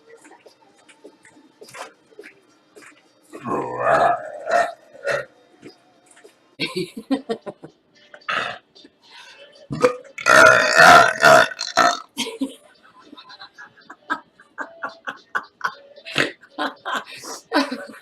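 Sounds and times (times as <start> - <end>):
woman burping: 3.4 - 5.3, 9.8 - 12.2.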